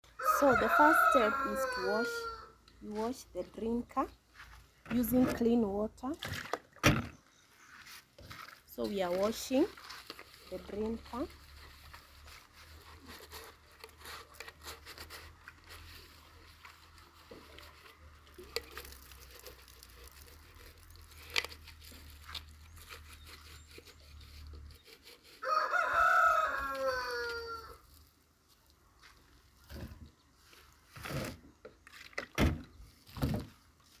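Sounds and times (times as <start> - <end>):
rooster crowing: 0.2 - 2.6, 25.4 - 27.8.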